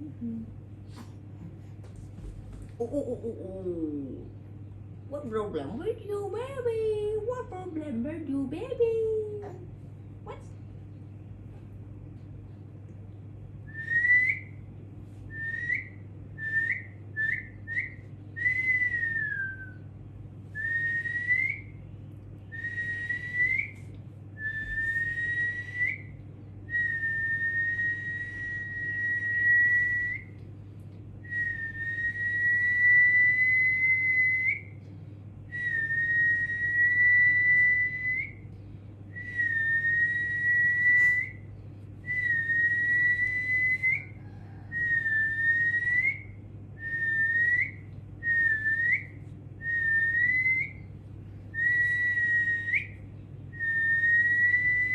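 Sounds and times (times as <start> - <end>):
person whistling: 13.7 - 14.6, 20.6 - 21.7, 22.6 - 30.4, 39.2 - 41.4, 42.1 - 50.8, 51.5 - 53.0, 53.6 - 54.9.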